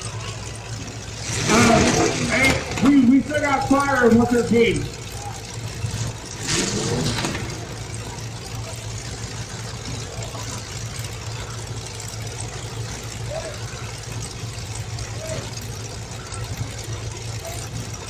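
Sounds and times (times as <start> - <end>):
car engines idling: 0.0 - 18.0.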